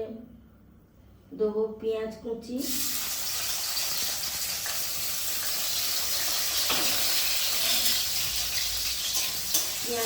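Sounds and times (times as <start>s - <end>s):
onion sizzling in hot oil: 2.6s - 10.0s.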